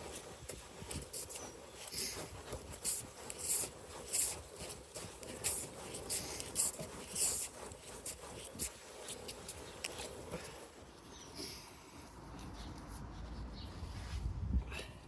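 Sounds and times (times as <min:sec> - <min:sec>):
rag rubbing a chain: 0:00.0 - 0:11.4.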